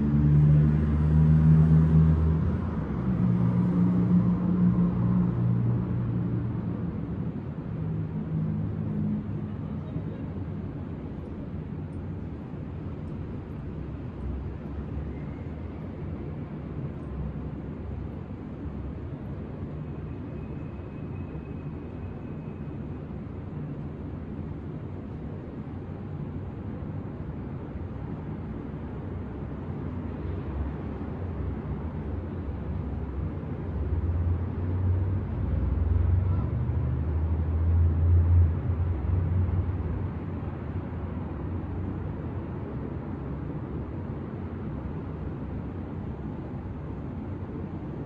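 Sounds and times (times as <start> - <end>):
city traffic rumble: 0.0 - 48.0.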